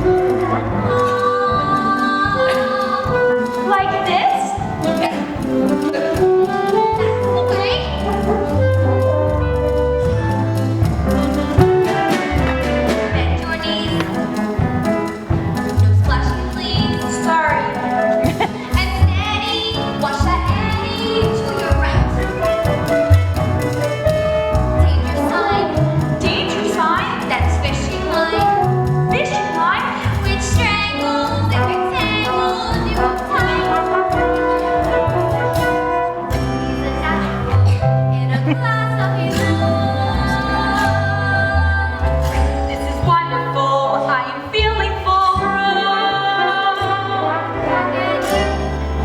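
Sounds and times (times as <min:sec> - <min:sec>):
low bass notes: 0:00.0 - 0:02.5, 0:04.6 - 0:17.1, 0:18.2 - 0:26.6, 0:27.3 - 0:29.3, 0:30.0 - 0:49.0
woman singing: 0:00.0 - 0:09.2, 0:15.7 - 0:22.9, 0:24.7 - 0:34.9, 0:36.9 - 0:49.0
orchestral accompaniment with brass: 0:00.0 - 0:19.1, 0:19.8 - 0:30.9, 0:31.5 - 0:38.6, 0:45.6 - 0:49.0
strings playing: 0:00.0 - 0:49.0.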